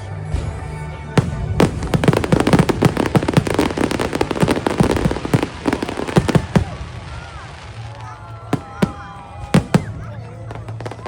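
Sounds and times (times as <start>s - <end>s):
soundtrack music: 0.0s - 5.6s
firework bangs: 0.3s - 11.0s
firework crackling pops: 1.2s - 11.0s.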